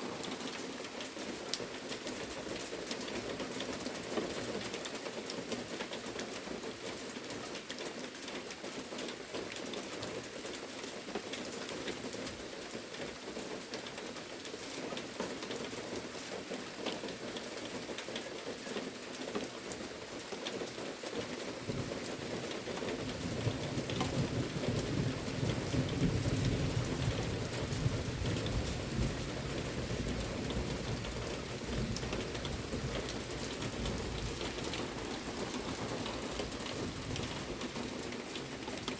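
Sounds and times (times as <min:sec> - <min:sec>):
rain drops on hard surface: 0:00.0 - 0:38.9
low thunder rumble: 0:23.3 - 0:37.8.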